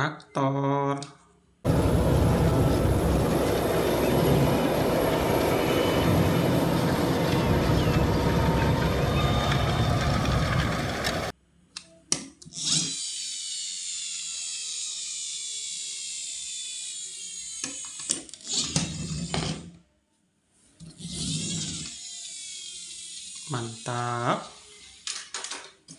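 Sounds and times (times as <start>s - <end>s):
toy motor whirring: 12.4s - 19.7s, 20.8s - 25.6s.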